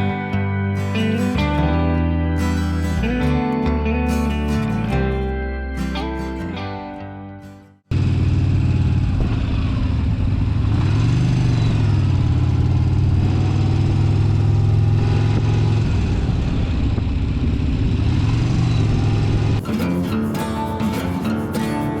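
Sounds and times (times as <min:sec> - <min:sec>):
motorcycle engine running: 0:07.9 - 0:22.0
wind noise: 0:08.8 - 0:22.0.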